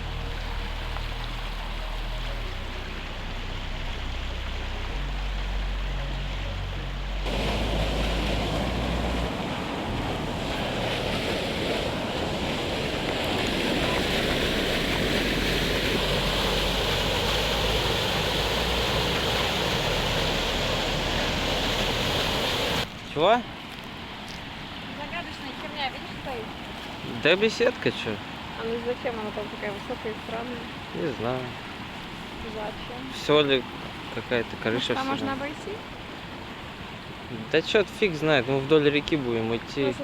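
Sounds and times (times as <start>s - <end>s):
low bass music: 0.0s - 22.3s
waterfall rushing: 0.0s - 40.0s.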